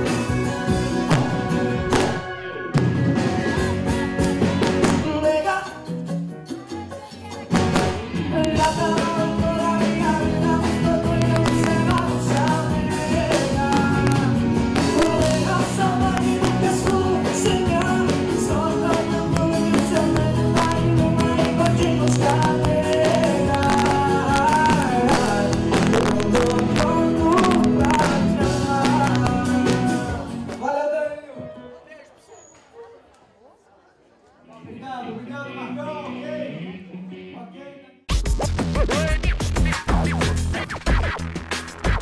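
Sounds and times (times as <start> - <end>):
drums: 0.0 - 31.7, 38.1 - 42.0
person singing: 0.0 - 31.7
live pop band playing: 0.0 - 33.0, 38.1 - 42.0.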